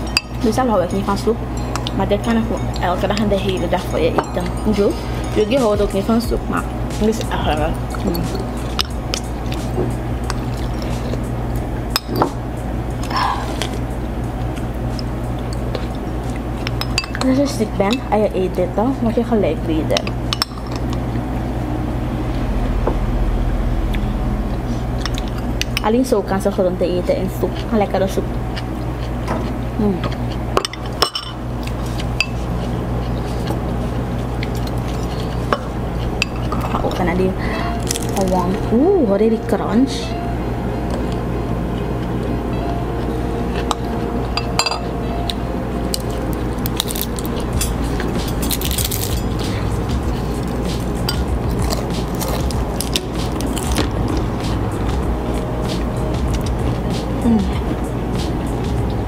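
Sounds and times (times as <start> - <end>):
spoon clinking against bowl: 0.0 - 5.6, 16.6 - 17.3, 43.6 - 44.9
utensils clinking on soup bowl: 0.0 - 6.2, 11.9 - 12.4, 15.4 - 18.2, 19.9 - 21.0, 30.0 - 32.7, 34.4 - 37.1, 43.6 - 45.0, 45.9 - 53.9
steady low hum: 0.0 - 59.0.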